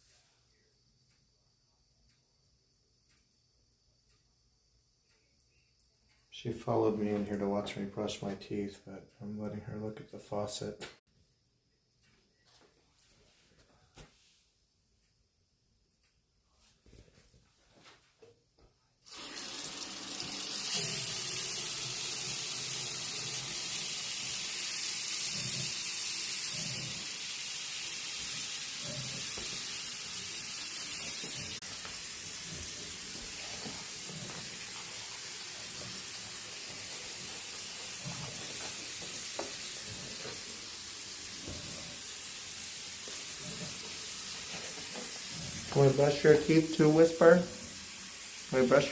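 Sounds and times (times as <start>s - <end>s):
water splashing into sink basin: 19.1s - 48.9s.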